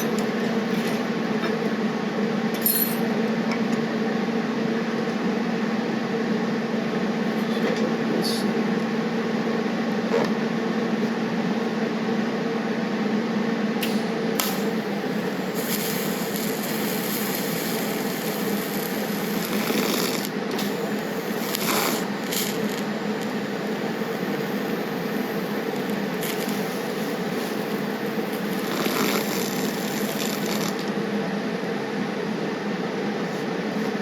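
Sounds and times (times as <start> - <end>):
electrical hum: 0.0 - 34.0
welding hiss and crackle: 13.8 - 31.0.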